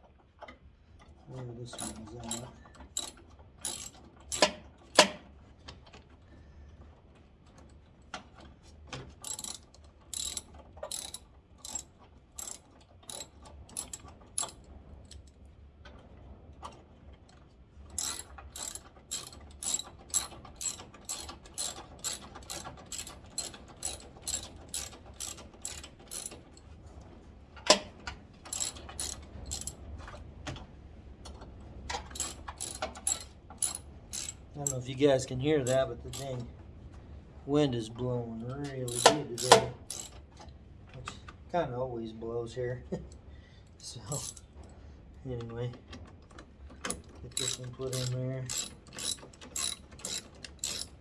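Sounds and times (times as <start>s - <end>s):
hand ratchet clicking: 1.7s - 5.2s, 9.2s - 11.8s, 12.4s - 14.6s, 18.0s - 26.5s, 28.5s - 29.8s, 32.2s - 34.9s, 35.6s - 36.4s, 38.9s - 40.2s, 44.1s - 44.4s, 46.9s - 51.0s.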